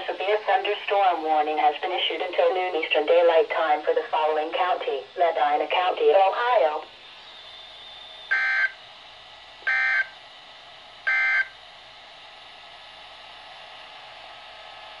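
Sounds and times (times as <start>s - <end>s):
digital data tone bursts: 8.2s - 8.8s, 9.7s - 10.1s, 11.1s - 11.6s.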